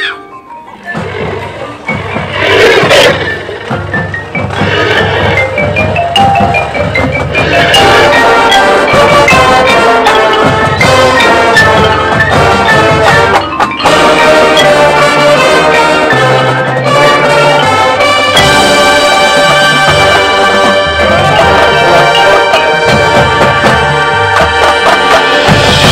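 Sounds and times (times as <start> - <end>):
marimba xylophone and glockenspiel: 0.0 - 25.9
marching band playing: 0.6 - 25.9.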